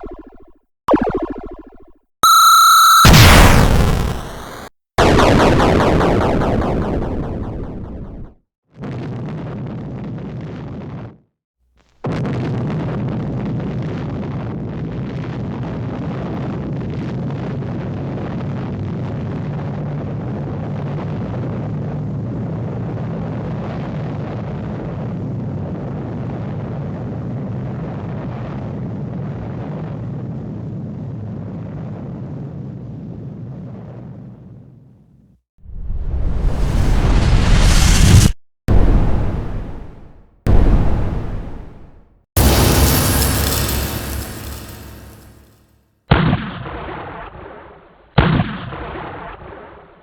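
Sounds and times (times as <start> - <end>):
explosion rumble: 3.0 - 8.3, 35.7 - 45.5.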